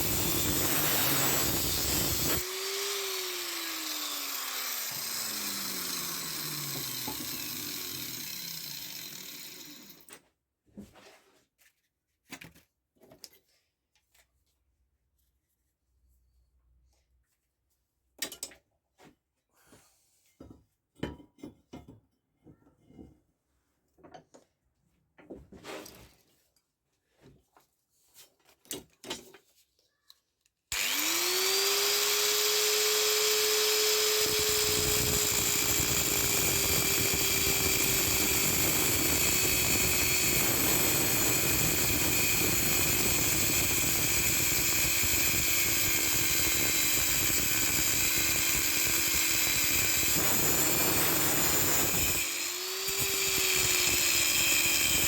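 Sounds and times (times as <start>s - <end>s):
power tool motor running: 0.0s - 10.0s, 30.7s - 55.0s.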